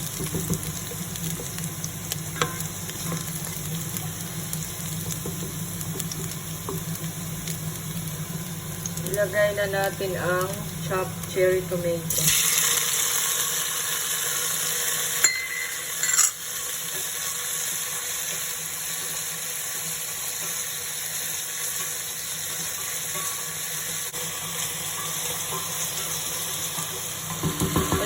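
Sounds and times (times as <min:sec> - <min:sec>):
food sizzling in a frying pan: 0:00.0 - 0:28.0
utensil knocking on a pan: 0:27.4 - 0:28.0.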